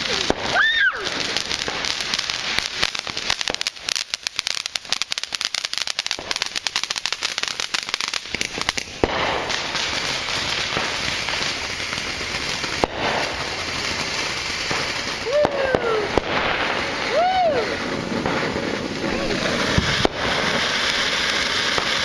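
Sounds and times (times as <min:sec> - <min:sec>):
firework crackling and popping: 0:00.0 - 0:22.0
firework hissing spray: 0:00.0 - 0:22.0.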